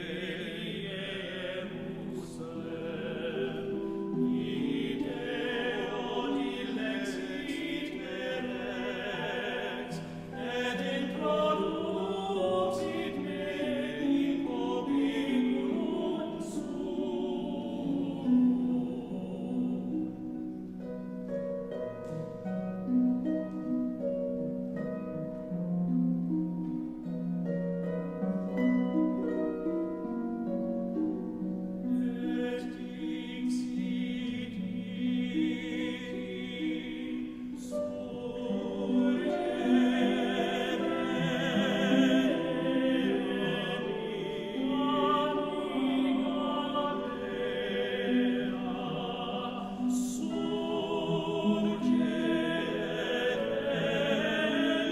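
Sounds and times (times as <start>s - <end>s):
solo singing voice with vibrato: 0.0s - 20.2s, 32.0s - 54.9s.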